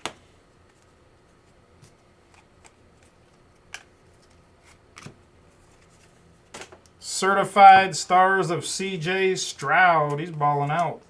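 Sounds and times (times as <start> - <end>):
cards clicking and rustling: 1.8 - 6.9, 10.0 - 11.0.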